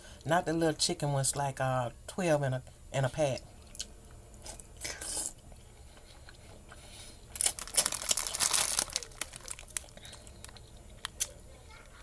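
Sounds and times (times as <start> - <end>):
plastic packet crinkling: 7.4 - 11.4.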